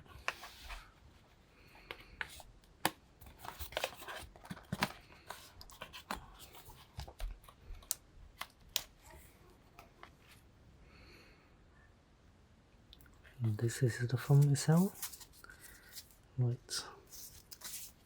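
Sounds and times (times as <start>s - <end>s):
paper packaging rustling: 3.2s - 8.0s, 14.2s - 16.2s, 17.0s - 18.0s.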